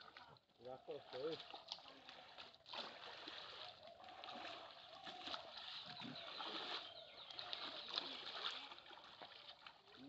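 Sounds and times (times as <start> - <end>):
faint water splashing: 0.0 - 10.0
birds chirping: 3.7 - 8.4.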